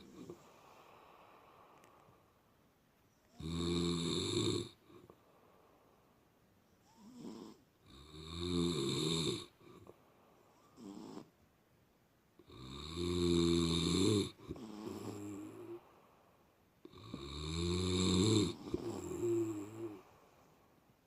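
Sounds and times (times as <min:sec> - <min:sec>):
cat snoring: 0:00.0 - 0:01.1, 0:03.4 - 0:05.1, 0:06.8 - 0:09.9, 0:10.5 - 0:11.3, 0:12.4 - 0:16.0, 0:16.9 - 0:20.4
soft cat breaths: 0:00.0 - 0:02.5.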